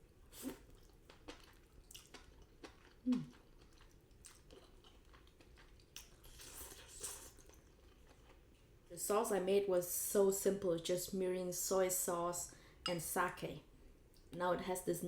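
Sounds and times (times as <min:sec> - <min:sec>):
chewing noodles: 0:00.3 - 0:08.4
wet mouth clicks: 0:03.0 - 0:03.4
person humming: 0:03.1 - 0:03.3.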